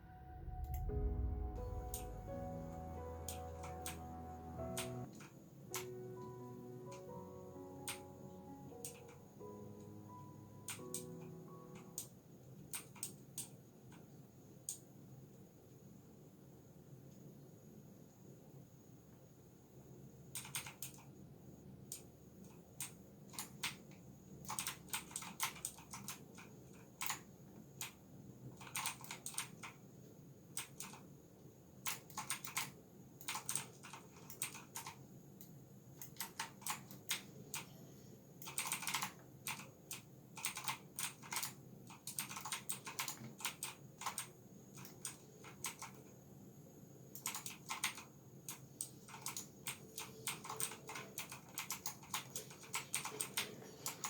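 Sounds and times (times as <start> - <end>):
mechanical keyboard typing: 1.8 - 14.1, 20.3 - 21.1, 21.8 - 29.8, 30.5 - 31.1, 31.8 - 37.7, 38.4 - 46.2, 47.1 - 54.0.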